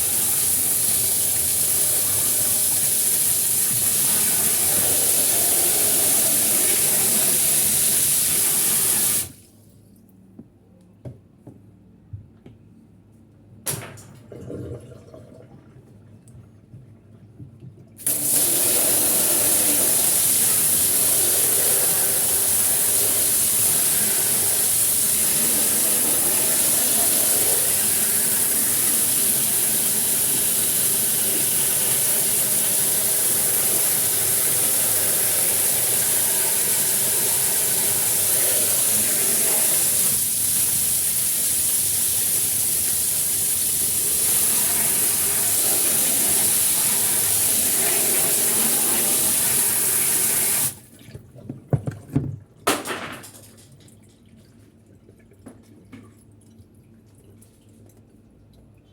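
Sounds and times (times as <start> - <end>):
water running under pressure: 0.0 - 9.4, 18.0 - 50.8.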